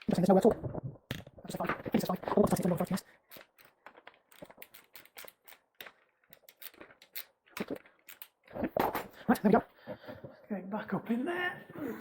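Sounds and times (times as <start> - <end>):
tools and bicycle parts clicking: 2.5 - 8.5.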